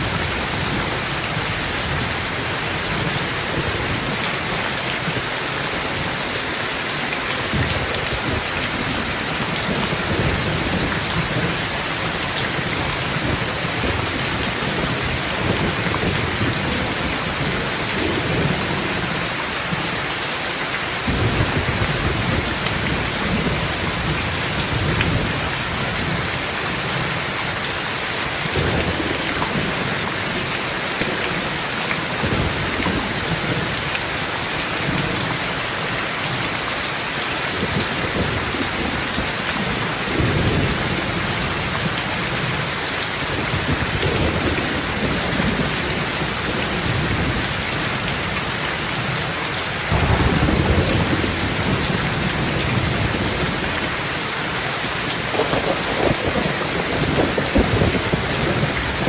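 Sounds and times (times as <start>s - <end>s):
heavy rain falling: 0.0s - 59.0s
thunder rumbling: 43.4s - 59.0s.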